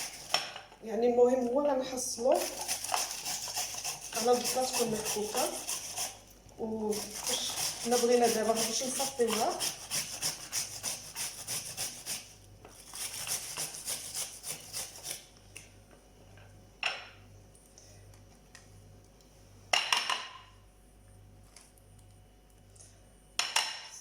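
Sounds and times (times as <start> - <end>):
onion grated on a grater: 0.0 - 0.4, 2.2 - 15.2.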